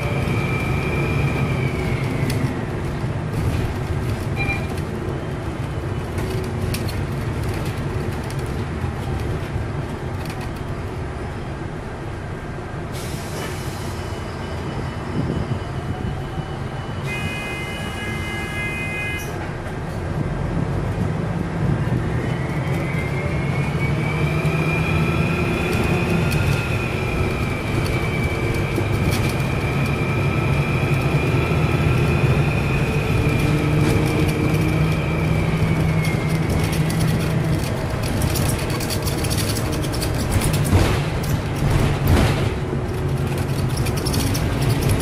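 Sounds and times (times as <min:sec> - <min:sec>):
bus engine rumble: 0:00.0 - 0:45.0
rattles: 0:36.0 - 0:45.0.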